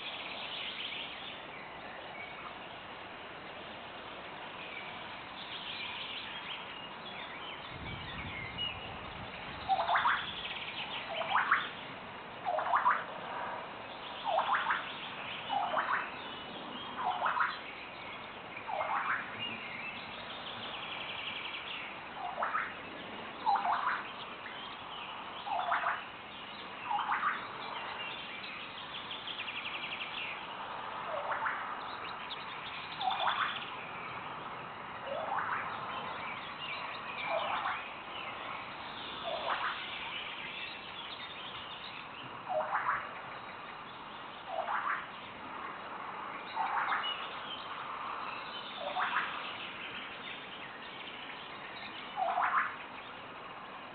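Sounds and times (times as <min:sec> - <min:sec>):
songbirds twittering faintly: 0:00.0 - 0:53.9
bird whistled calls: 0:09.6 - 0:11.8, 0:14.2 - 0:16.3, 0:25.4 - 0:26.0, 0:32.7 - 0:33.8, 0:35.1 - 0:37.9, 0:38.9 - 0:41.6, 0:48.4 - 0:49.5.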